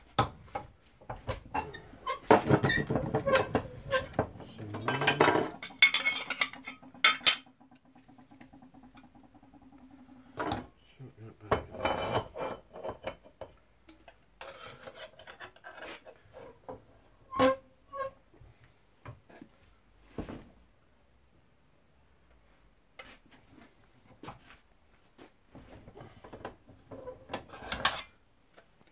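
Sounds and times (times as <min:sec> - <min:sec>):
metal scraping and rubbing: 0:01.4 - 0:08.2.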